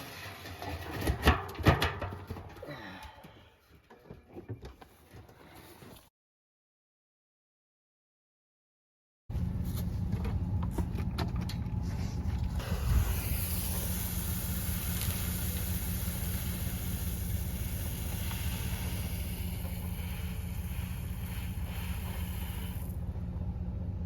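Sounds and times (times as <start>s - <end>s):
vehicle engine drone: 9.3s - 24.0s.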